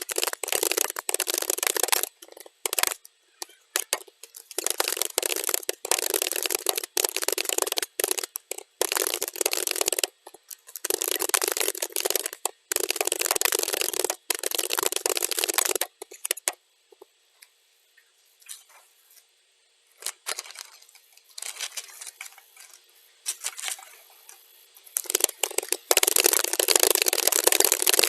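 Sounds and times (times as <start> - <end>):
computer keyboard typing: 0.0 - 16.6, 25.0 - 28.0.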